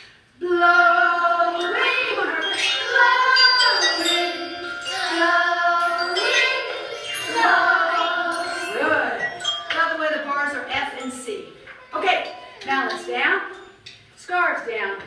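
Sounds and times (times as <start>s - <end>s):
person singing sliding notes: 0.4s - 10.0s.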